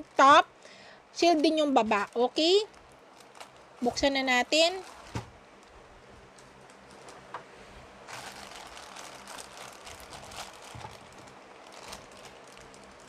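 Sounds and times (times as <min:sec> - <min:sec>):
cardboard packaging rustling: 0:04.7 - 0:05.4, 0:08.0 - 0:13.0.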